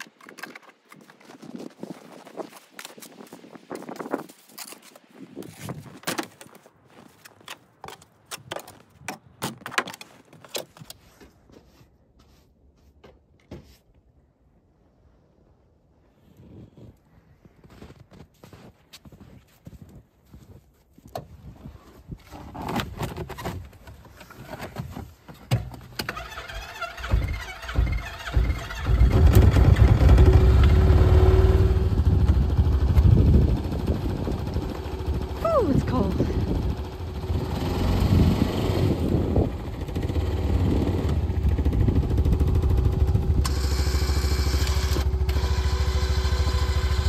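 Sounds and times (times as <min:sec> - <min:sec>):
footsteps crunching in snow: 0:00.9 - 0:08.0, 0:10.0 - 0:13.8, 0:16.1 - 0:22.3
engine cranking and starting: 0:25.7 - 0:35.4, 0:36.6 - 0:47.0.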